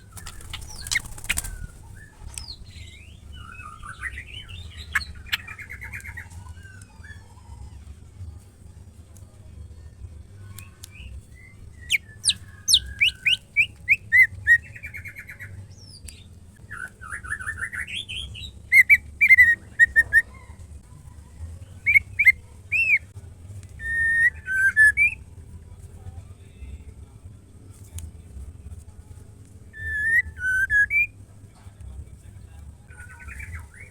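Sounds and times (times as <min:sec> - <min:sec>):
low steady hum: 0:00.0 - 0:33.9
bird calling with whistles and trills: 0:11.8 - 0:15.5, 0:16.8 - 0:20.6, 0:23.8 - 0:25.2, 0:29.8 - 0:31.1.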